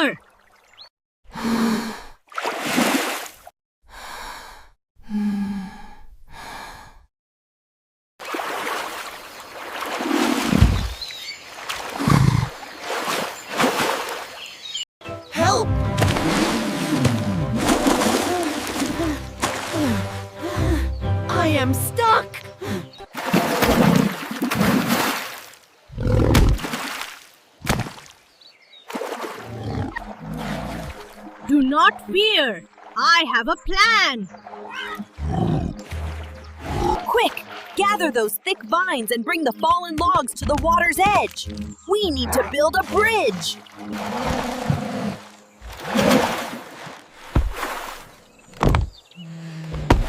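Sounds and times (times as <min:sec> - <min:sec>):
cartoon character gasps and sighs: 0:03.9 - 0:07.1
low thump: 0:48.6 - 0:49.0.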